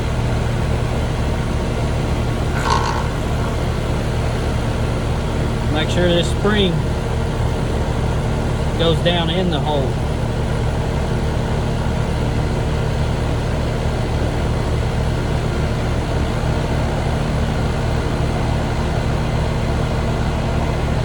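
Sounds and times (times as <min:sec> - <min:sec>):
machinery humming: 0:01.2 - 0:10.2.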